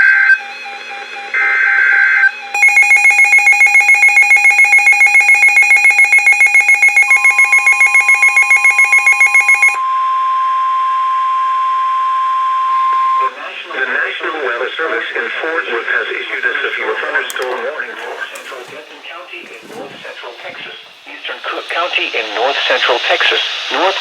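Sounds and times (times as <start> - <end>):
rapidly pulsing electronic alarm: 0.0 - 9.8
steady warning tone: 0.0 - 9.8
shrill data bursts: 2.6 - 9.8.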